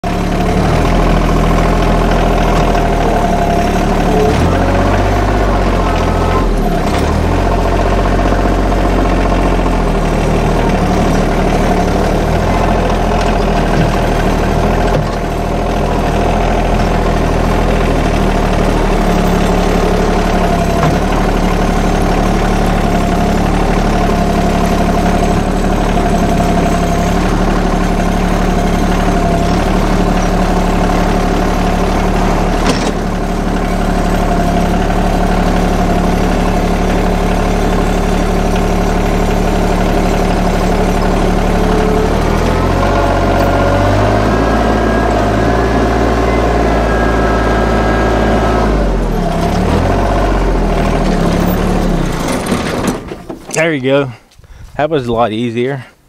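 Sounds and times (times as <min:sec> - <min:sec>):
sawmill engine running: 0:00.0 - 0:55.6
steady tone: 0:41.4 - 0:49.0.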